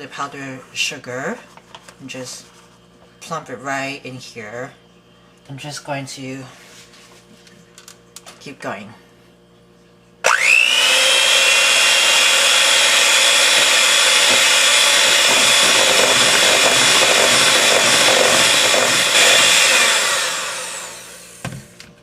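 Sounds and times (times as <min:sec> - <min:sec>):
electric mixer whining: 0:10.2 - 0:21.7.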